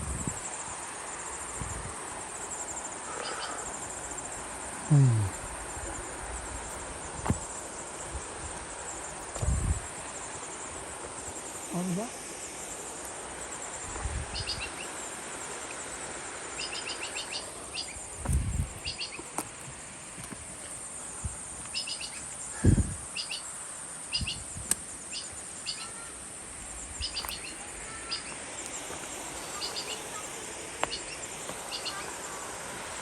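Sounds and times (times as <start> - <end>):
high insect drone: 0.0 - 33.0
bird chirping: 16.6 - 18.0, 18.8 - 19.2, 21.7 - 22.2, 23.2 - 23.5, 27.0 - 32.2.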